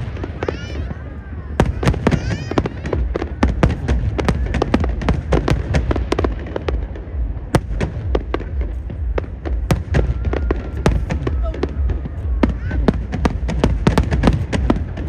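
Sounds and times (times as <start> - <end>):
low rumble: 2.7 - 15.0.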